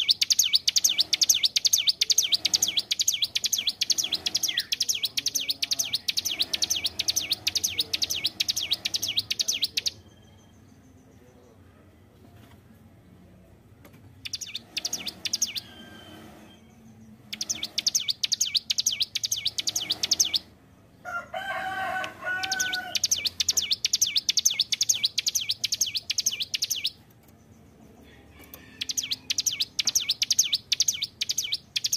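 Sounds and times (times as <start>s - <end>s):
bird singing rapid high notes: 0.0s - 10.9s, 14.2s - 20.6s, 22.4s - 27.0s, 28.8s - 31.9s
lower harsh bird call: 22.2s - 24.1s.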